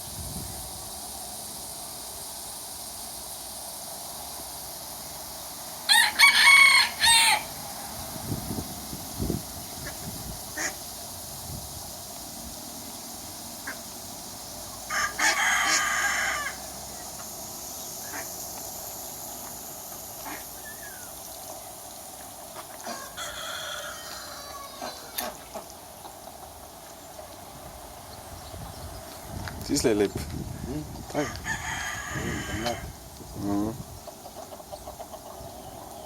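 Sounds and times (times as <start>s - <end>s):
rooster crowing: 5.9s - 7.6s, 14.9s - 16.8s, 22.8s - 25.2s, 31.2s - 33.0s
chicken clucking: 34.0s - 36.0s.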